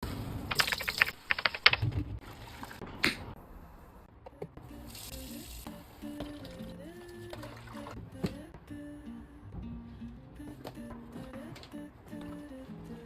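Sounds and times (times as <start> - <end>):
sharp clicks and clatter: 0.5 - 1.9.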